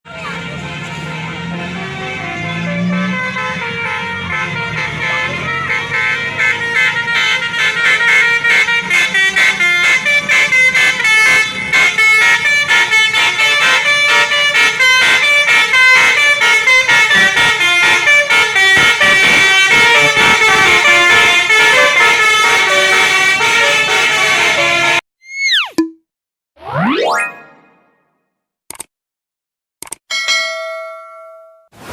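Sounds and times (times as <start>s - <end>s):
musical air horn melody: 0.4s - 25.0s.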